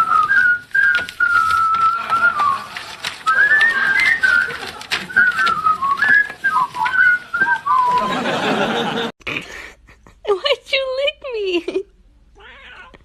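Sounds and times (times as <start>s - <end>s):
person whistling: 0.0s - 8.2s.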